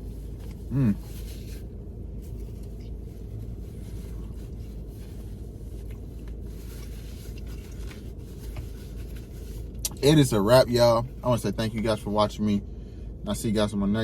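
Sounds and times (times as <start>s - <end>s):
faint scrapes and rustles: 0.0s - 9.8s
car cabin rumble: 0.0s - 14.0s.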